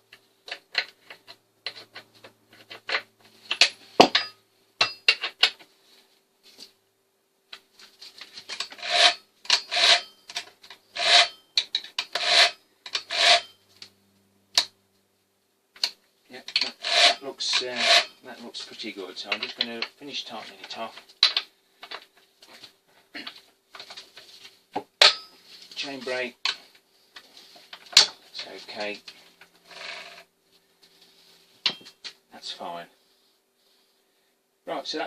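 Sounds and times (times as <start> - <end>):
chain links rasping along bar: 8.6 - 10.4, 11.0 - 11.4, 12.0 - 13.6, 16.6 - 18.2.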